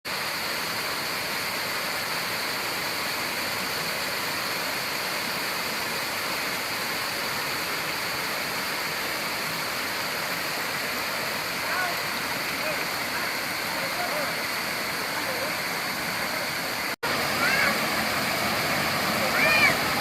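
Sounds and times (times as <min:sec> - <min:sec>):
waterfall rushing: 0:00.1 - 0:20.0.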